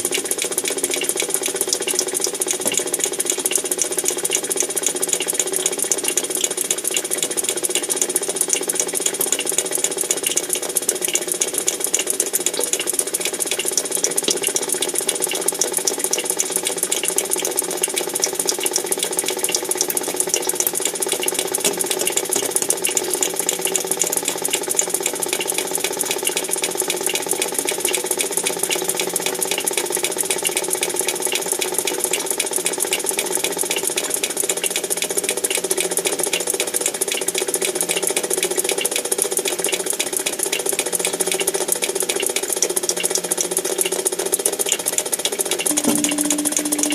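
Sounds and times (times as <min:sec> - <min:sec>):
rapid mechanical rattling: 0:00.0 - 0:46.9
steady machine hum: 0:45.6 - 0:46.9.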